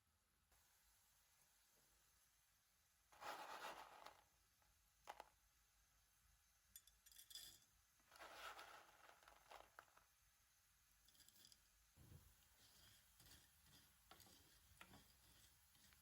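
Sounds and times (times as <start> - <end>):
rustling and scraping: 3.1 - 4.3, 8.0 - 10.1, 11.1 - 16.0.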